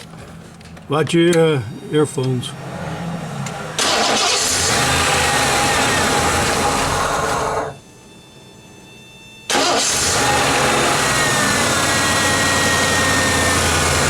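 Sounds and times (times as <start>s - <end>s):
car engine running loud: 2.2s - 7.8s, 9.5s - 14.0s.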